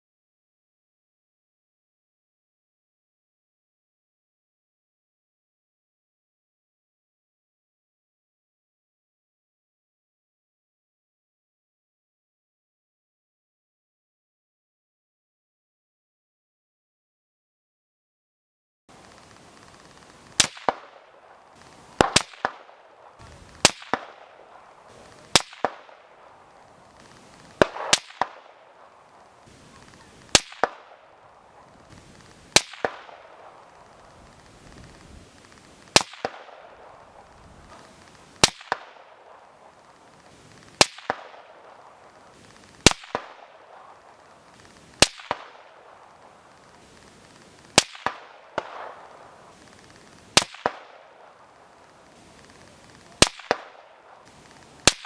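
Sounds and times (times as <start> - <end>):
rifle shots echoing: 20.3 - 35.0, 35.8 - 46.9, 47.7 - 55.0.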